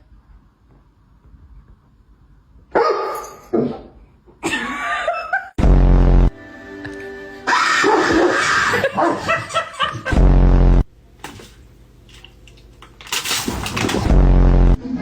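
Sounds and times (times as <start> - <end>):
music: 5.6 - 8.1.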